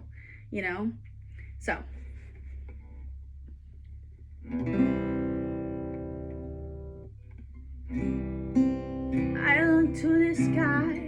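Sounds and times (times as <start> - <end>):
low steady hum: 0.0 - 11.0
acoustic guitar chords strummed: 4.4 - 7.2, 7.8 - 11.0.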